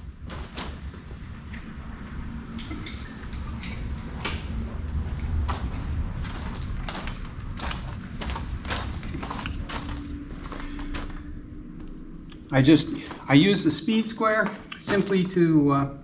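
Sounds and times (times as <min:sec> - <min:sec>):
steady low rumble: 0:00.0 - 0:16.0
footsteps and knocks: 0:03.6 - 0:13.4, 0:14.2 - 0:15.5.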